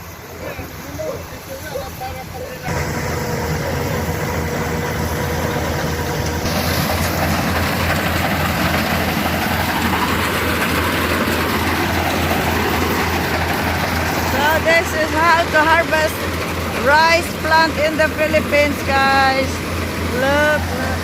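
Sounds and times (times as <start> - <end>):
combine harvester engine running: 0.0 - 21.0.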